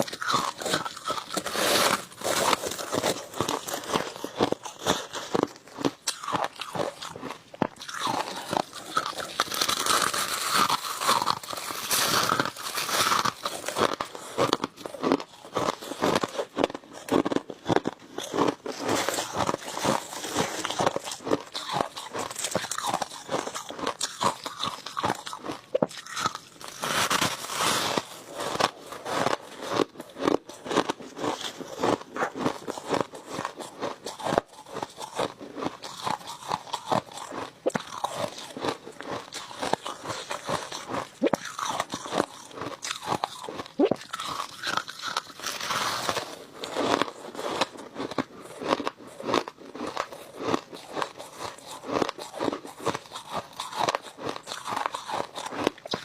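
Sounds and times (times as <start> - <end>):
chewing crushed ice: 0.0 - 56.0.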